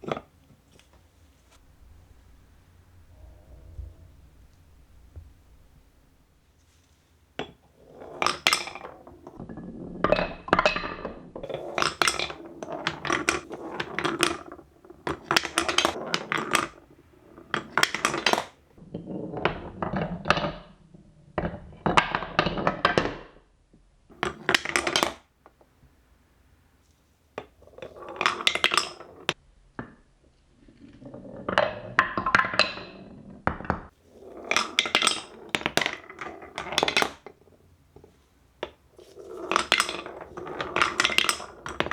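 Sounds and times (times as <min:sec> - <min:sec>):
marbles clattering down track: 0:07.8 - 0:09.4, 0:10.1 - 0:18.6, 0:24.1 - 0:25.2, 0:27.4 - 0:29.4, 0:34.1 - 0:41.9.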